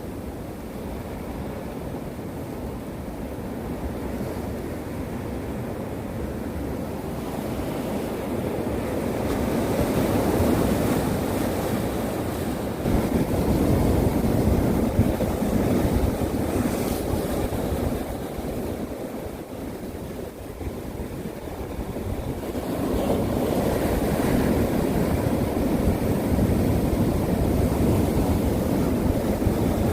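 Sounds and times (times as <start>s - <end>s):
sea waves breaking on shore: 0.0s - 29.9s
wind buffeting microphone: 7.7s - 29.9s.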